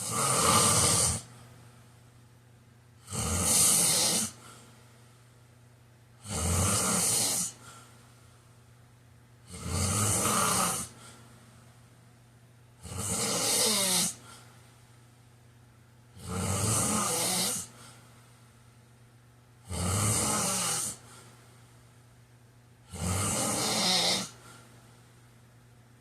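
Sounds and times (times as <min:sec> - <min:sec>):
man snoring: 0:00.0 - 0:01.3, 0:03.0 - 0:04.4, 0:06.2 - 0:07.6, 0:09.5 - 0:11.0, 0:12.8 - 0:14.2, 0:16.2 - 0:17.8, 0:19.6 - 0:21.0, 0:22.9 - 0:24.4.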